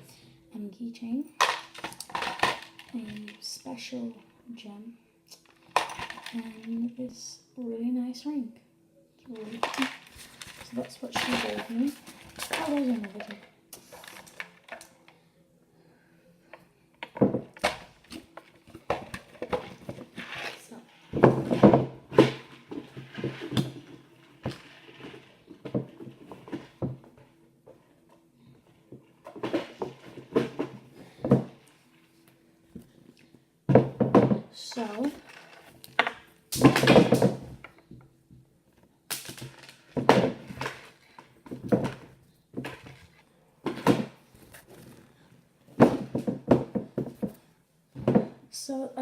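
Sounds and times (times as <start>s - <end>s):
faint steady hum: 0.0s - 49.0s
objects rustling and knocking: 1.3s - 4.3s, 5.3s - 7.0s, 9.3s - 15.2s, 16.4s - 48.5s
packaging being rummaged through: 1.4s - 3.5s, 9.3s - 15.1s.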